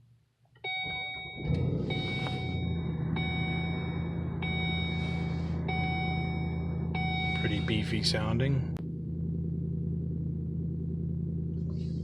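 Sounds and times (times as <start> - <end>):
dashboard warning chime: 0.6 - 8.0
car engine idling: 0.6 - 12.0.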